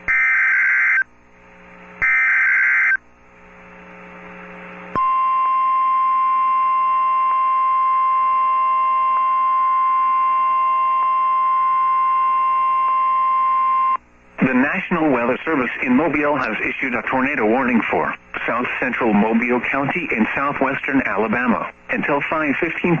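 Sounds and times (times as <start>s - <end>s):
steady warning alarm tone: 0.0s - 1.1s, 2.0s - 3.0s
warbling data bursts: 2.0s - 3.0s.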